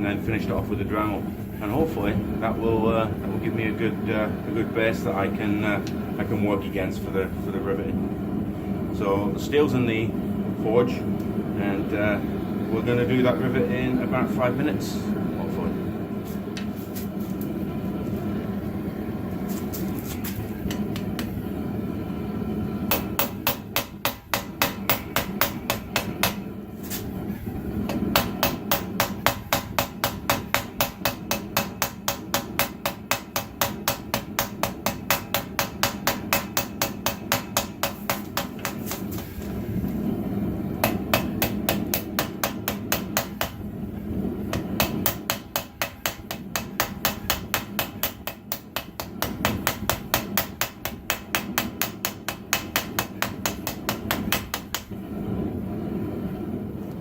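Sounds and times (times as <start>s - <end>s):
hammer striking steel on anvil: 22.9s - 26.5s, 27.9s - 39.4s, 40.8s - 43.6s, 44.5s - 55.0s.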